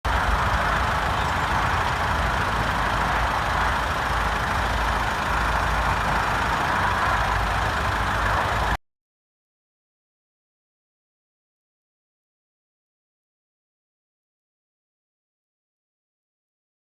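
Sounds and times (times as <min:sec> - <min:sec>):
diesel engine idling: 0:00.0 - 0:08.8.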